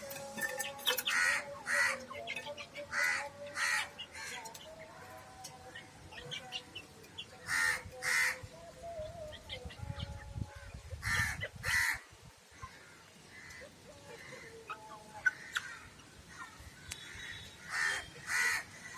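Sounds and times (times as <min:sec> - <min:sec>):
harsh rasping bird calls: 0:00.0 - 0:04.7, 0:12.6 - 0:18.9.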